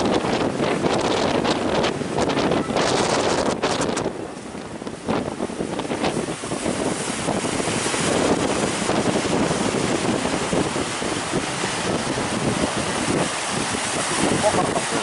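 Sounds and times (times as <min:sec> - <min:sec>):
sea surf rushing: 0:00.0 - 0:15.0
wind buffeting microphone: 0:00.0 - 0:15.0.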